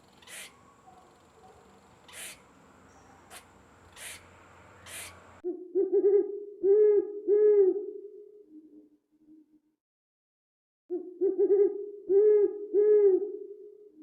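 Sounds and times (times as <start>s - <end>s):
owl hooting: 0.0s - 7.9s.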